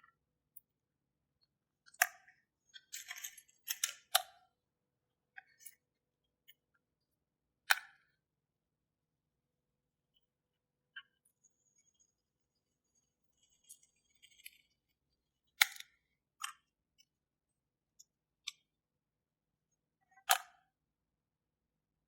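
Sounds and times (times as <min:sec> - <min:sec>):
scraping of small hard parts: 0:01.9 - 0:04.2, 0:12.9 - 0:14.9
sharp clicks of small parts: 0:01.9 - 0:04.3, 0:15.6 - 0:16.6.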